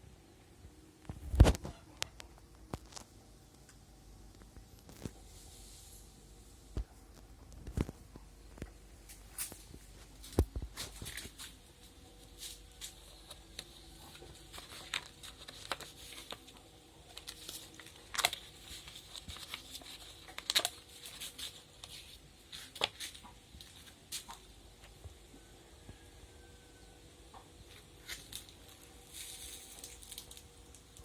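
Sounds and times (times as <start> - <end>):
faint steady hum: 0.0 - 31.0
paper rustling: 9.1 - 24.4.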